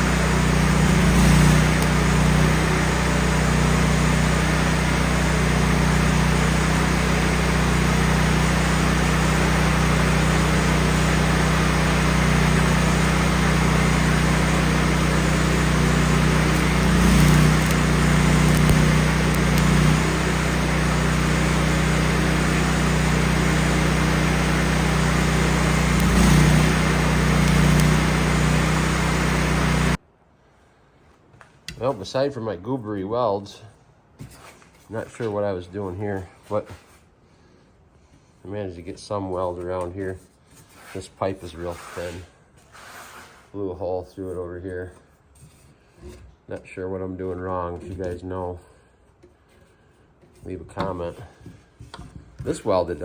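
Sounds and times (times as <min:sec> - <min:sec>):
generator engine running: 0:00.0 - 0:30.0
welding arc hiss and crackle: 0:00.3 - 0:02.9, 0:15.1 - 0:20.4, 0:24.5 - 0:30.0.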